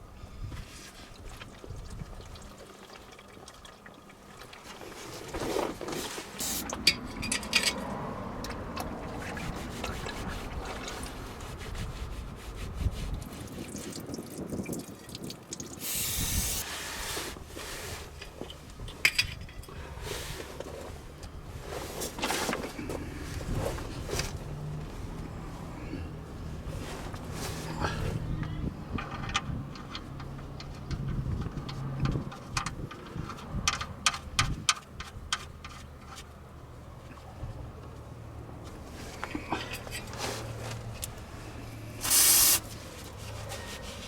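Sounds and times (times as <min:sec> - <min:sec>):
oil pouring and trickling: 0:00.6 - 0:06.7, 0:13.2 - 0:18.7, 0:41.7 - 0:42.8.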